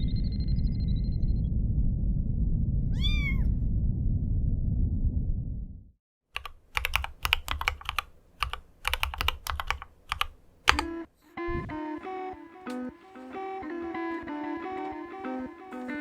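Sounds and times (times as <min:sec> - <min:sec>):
mechanical keyboard typing: 0:06.4 - 0:11.0
guitar music: 0:10.8 - 0:16.0.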